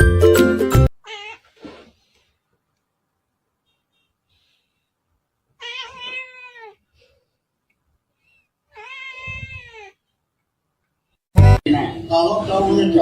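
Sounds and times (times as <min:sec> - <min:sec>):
cat meowing: 0:01.0 - 0:01.6, 0:05.6 - 0:06.8, 0:08.7 - 0:10.0.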